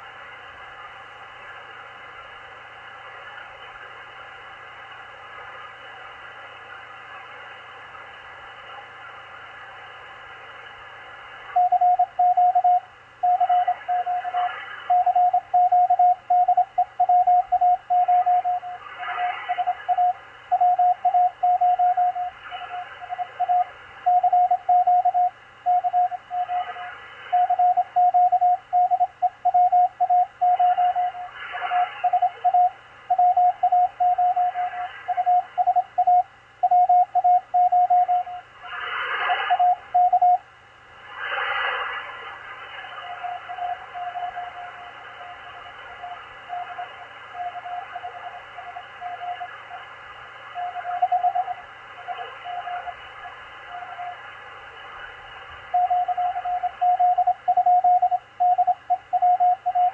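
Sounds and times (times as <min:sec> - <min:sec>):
radio hiss and static crackle: 0:00.0 - 0:59.9
morse code beeps: 0:11.6 - 0:18.8, 0:19.5 - 0:38.4, 0:39.5 - 0:40.4, 0:43.1 - 0:49.5, 0:55.7 - 0:59.9.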